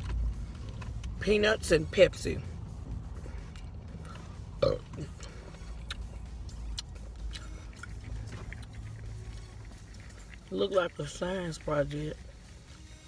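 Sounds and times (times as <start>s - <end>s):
short burp: 4.6s - 5.1s.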